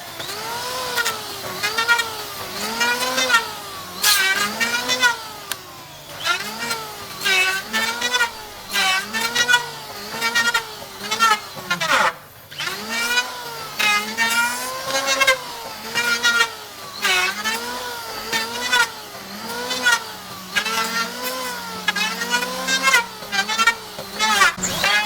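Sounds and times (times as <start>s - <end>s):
power tool motor running: 0.0s - 25.0s
cutting noise: 6.2s - 25.0s.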